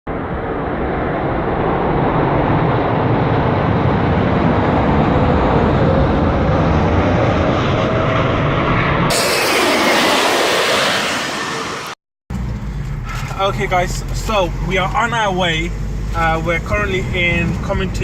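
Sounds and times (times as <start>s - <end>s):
jet engine roar with whine: 0.1s - 12.0s.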